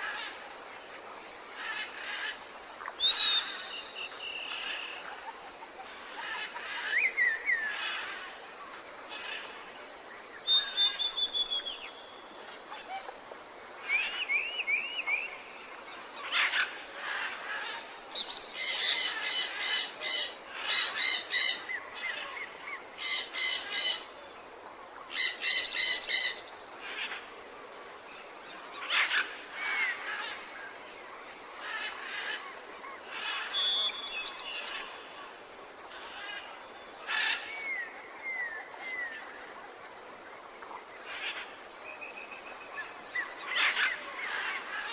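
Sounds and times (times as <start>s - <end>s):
insects humming: 0.0s - 44.9s
birds whistling: 10.5s - 11.9s.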